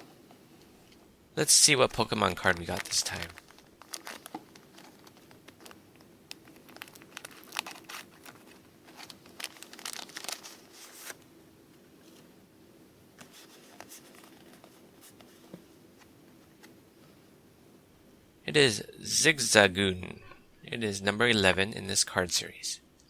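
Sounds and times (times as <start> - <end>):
plastic packet tearing and crinkling: 1.9 - 11.2.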